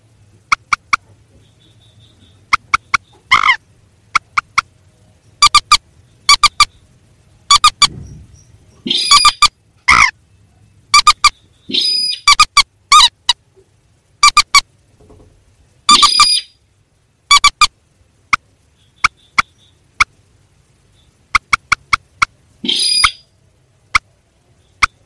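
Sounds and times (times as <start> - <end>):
recorded bird calls: 0.0 - 25.0
harsh noisy bird call: 0.5 - 4.7, 5.4 - 10.2, 10.9 - 13.4, 15.9 - 16.6, 20.9 - 23.4.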